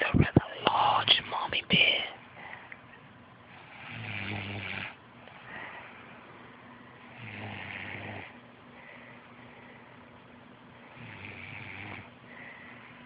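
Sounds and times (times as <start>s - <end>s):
woman snoring: 3.7s - 5.0s, 7.1s - 8.4s, 10.9s - 12.5s.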